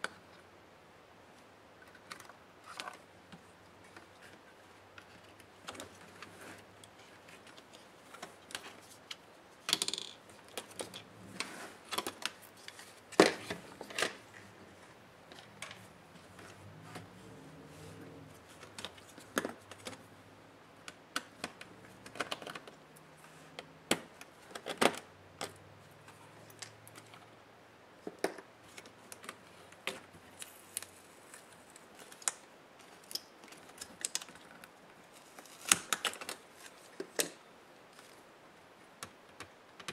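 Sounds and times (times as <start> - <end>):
laptop parts and tools clicking: 1.8 - 14.3, 18.2 - 20.1, 20.8 - 27.3, 28.0 - 37.4, 39.0 - 39.9.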